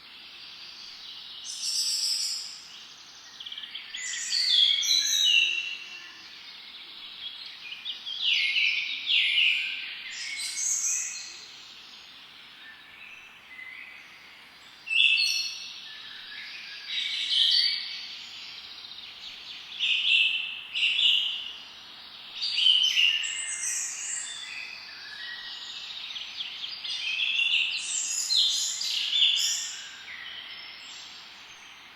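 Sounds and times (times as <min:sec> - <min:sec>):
faint background hiss: 0:00.0 - 0:31.9
bird singing chirps and trills: 0:22.4 - 0:31.9.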